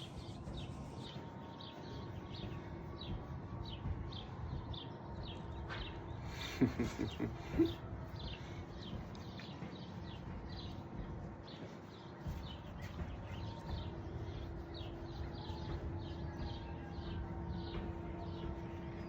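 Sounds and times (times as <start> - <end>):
bird chirping: 0.0 - 19.0.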